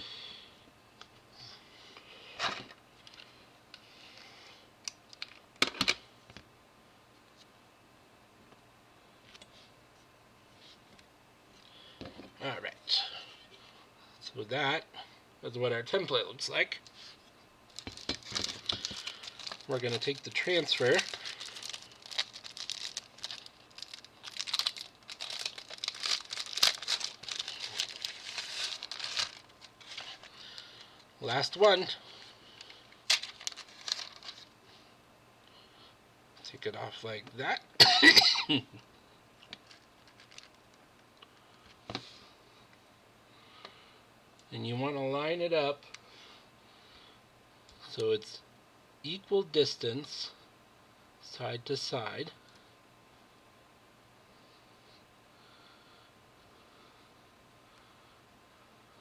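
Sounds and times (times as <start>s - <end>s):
soft rustle: 16.9s - 31.0s
crinkling transfer sheet: 16.9s - 34.6s, 39.6s - 40.7s.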